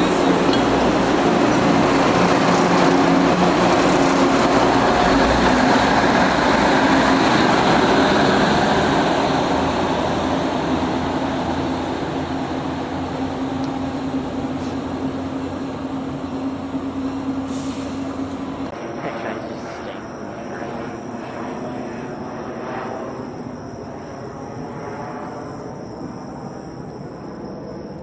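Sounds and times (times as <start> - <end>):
rolling rail noise: 0.0 - 22.8
diesel railcar engine drone: 0.0 - 24.0.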